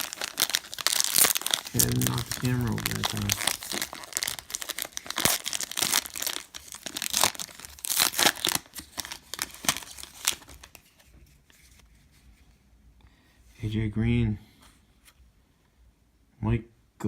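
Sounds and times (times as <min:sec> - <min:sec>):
plastic wrapper tearing and crinkling: 0:00.0 - 0:11.0.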